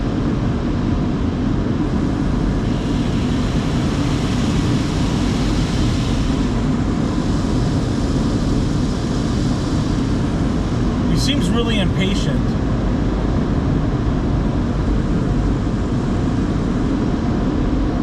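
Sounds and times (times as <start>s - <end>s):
car wash equipment roaring: 0.0s - 18.0s
high hiss: 2.5s - 12.5s.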